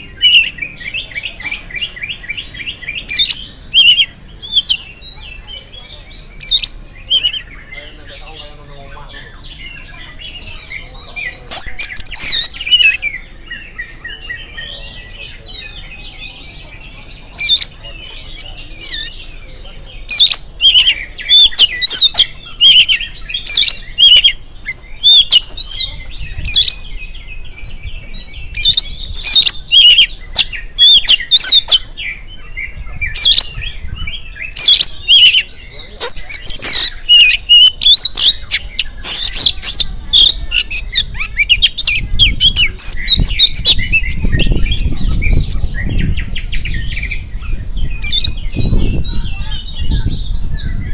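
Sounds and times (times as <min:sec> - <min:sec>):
bird whistled warbling song: 0:00.0 - 0:08.0, 0:09.1 - 0:50.9
soft bird twittering: 0:00.0 - 0:50.9.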